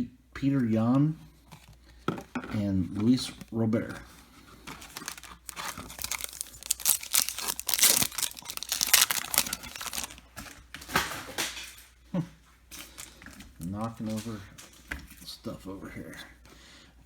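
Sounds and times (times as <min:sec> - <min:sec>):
foil wrapper crinkling and tearing: 0:04.6 - 0:11.6.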